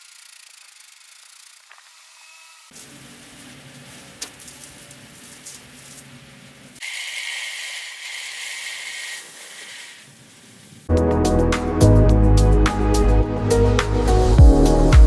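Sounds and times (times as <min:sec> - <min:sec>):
hiss: 0:02.7 - 0:10.9.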